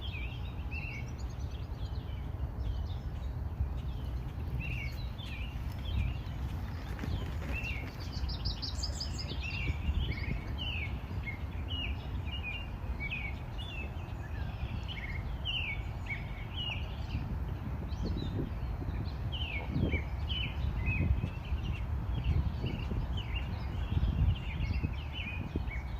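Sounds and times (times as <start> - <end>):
low outdoor background rumble: 0.0 - 25.9
songbirds chirping: 0.0 - 25.9.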